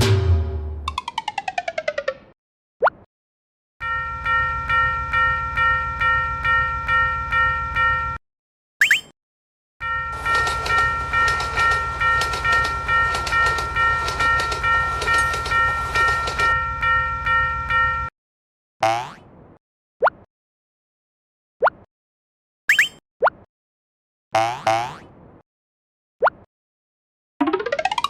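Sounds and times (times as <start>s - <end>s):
level crossing alarm clanging: 3.8s - 8.2s, 9.8s - 18.1s.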